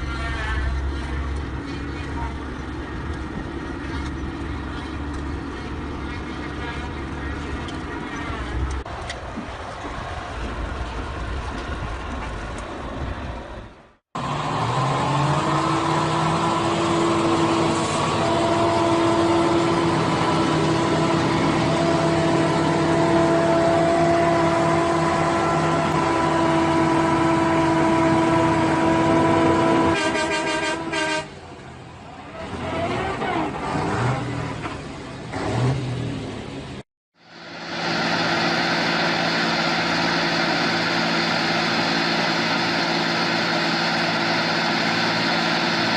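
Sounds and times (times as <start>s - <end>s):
engine and traffic noise: 0.0s - 45.9s
vehicle horn blast: 18.0s - 19.6s, 20.8s - 31.4s.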